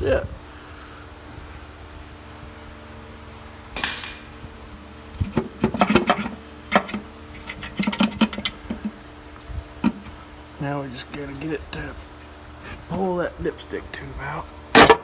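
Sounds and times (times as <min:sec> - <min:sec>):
metal clanking and knocking: 0:03.8 - 0:04.4, 0:05.2 - 0:08.9, 0:09.8 - 0:10.1
metal scraping rasp: 0:05.2 - 0:09.0.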